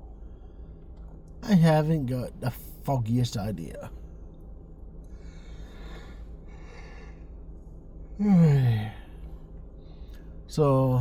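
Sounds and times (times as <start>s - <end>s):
man yawning: 8.2s - 9.0s.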